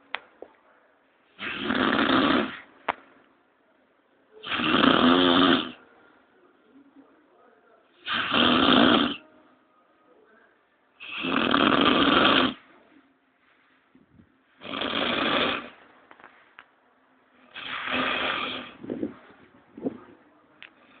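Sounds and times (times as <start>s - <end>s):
loud rasping snores: 1.4s - 2.6s, 4.4s - 5.8s, 8.0s - 9.2s, 11.0s - 12.6s, 14.6s - 15.7s, 17.5s - 18.8s.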